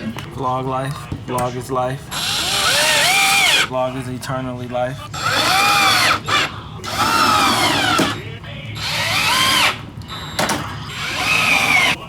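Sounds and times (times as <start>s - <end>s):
electric drill whining: 2.1s - 3.7s, 5.1s - 12.0s.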